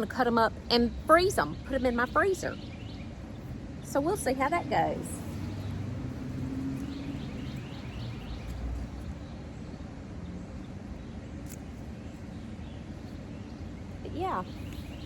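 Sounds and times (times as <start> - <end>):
bird chirping: 0.0 - 15.0
steady low rumble: 0.0 - 15.0.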